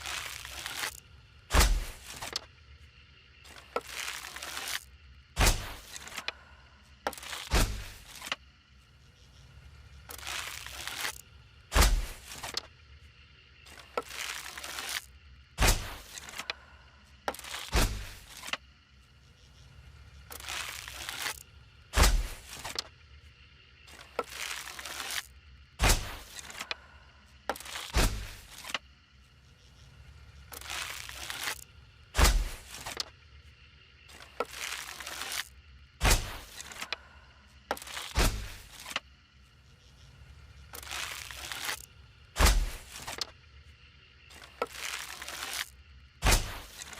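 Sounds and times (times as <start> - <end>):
arrow strikes with low thud: 1.5 - 2.0, 5.4 - 5.8, 7.5 - 8.0, 11.7 - 12.2, 22.0 - 22.4, 25.8 - 26.2, 32.2 - 32.6, 36.0 - 36.4, 38.2 - 38.6, 42.4 - 42.8, 46.2 - 46.7.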